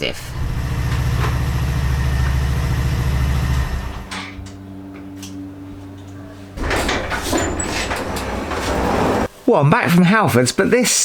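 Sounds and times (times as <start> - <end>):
motorcycle engine running: 0.0 - 4.1.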